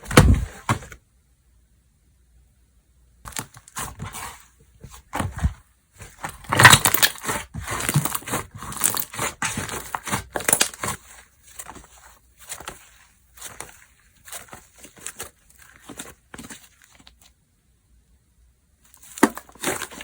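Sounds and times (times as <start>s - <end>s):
hands squishing slime: 3.3s - 17.2s, 19.0s - 20.0s.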